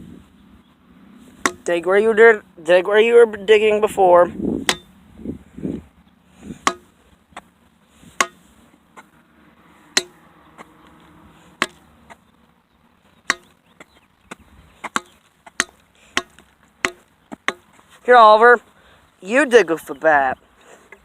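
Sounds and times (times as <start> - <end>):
digging tool chopping ground: 1.4 - 1.7, 4.6 - 4.9, 6.5 - 9.1, 9.9 - 10.7, 11.4 - 12.2, 13.2 - 17.9.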